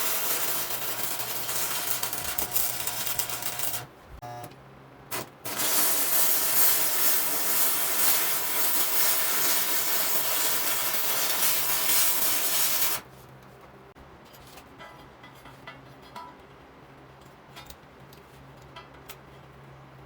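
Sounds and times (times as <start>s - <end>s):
arc welder hissing: 0.0s - 3.9s, 5.1s - 13.0s.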